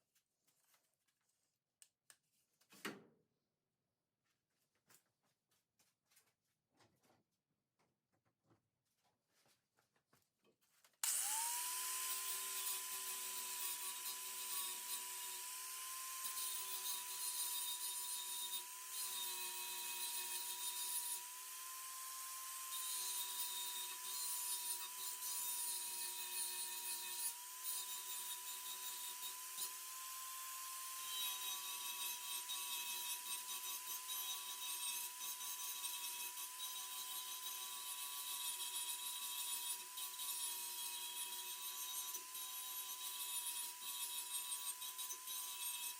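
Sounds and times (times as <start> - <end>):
power grinder on steel: 11.0 - 45.9.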